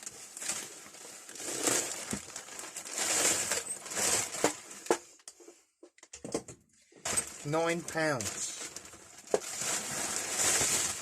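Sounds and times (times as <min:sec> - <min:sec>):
bag rustling and crinkling: 0:00.0 - 0:05.1, 0:07.0 - 0:11.0.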